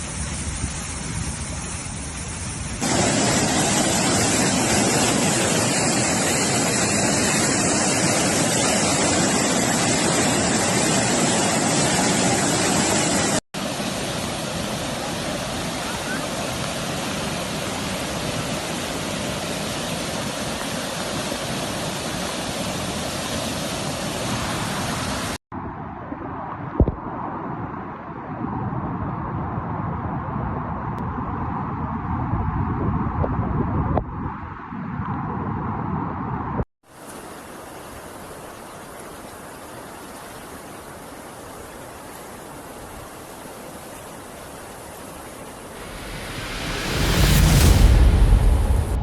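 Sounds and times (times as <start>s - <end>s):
floodwater rushing: 2.8s - 25.4s, 37.0s - 49.0s.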